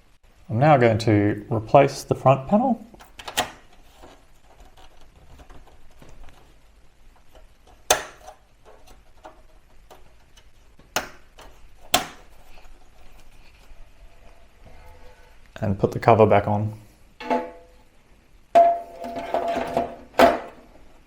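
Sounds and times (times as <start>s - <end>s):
plastic panel snapping into place: 7.9s - 8.4s, 10.9s - 12.3s.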